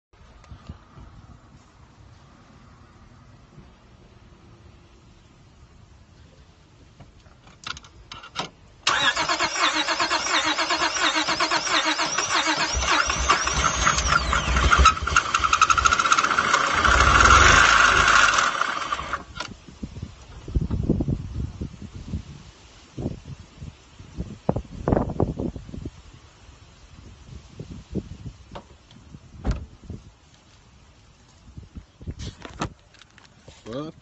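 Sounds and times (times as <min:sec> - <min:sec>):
car engine starting and running: 0:08.3 - 0:19.6.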